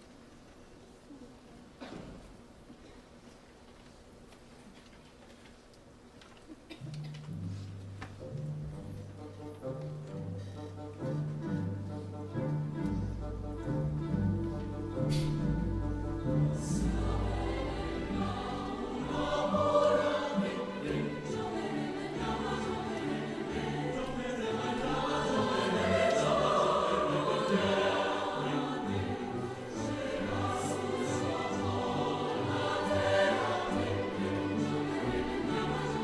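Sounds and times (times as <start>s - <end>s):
choir singing held chords: 14.8s - 36.0s.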